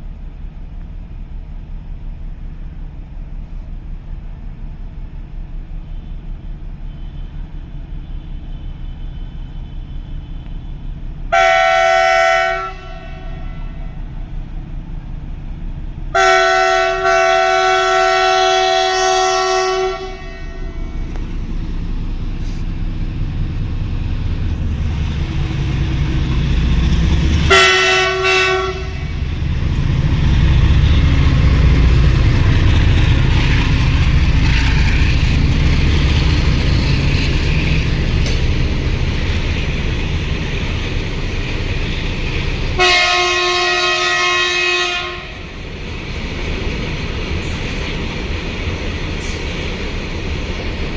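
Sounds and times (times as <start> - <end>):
train rumbling past: 0.0 - 50.9
train horn blasts: 11.3 - 14.0, 16.1 - 21.2, 27.5 - 29.3, 42.8 - 45.4.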